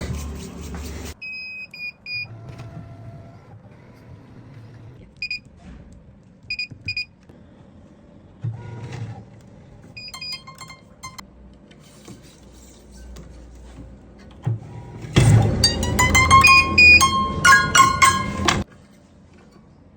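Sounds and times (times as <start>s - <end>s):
high-pitched electronic beeps: 10.0s - 11.2s, 15.6s - 18.6s.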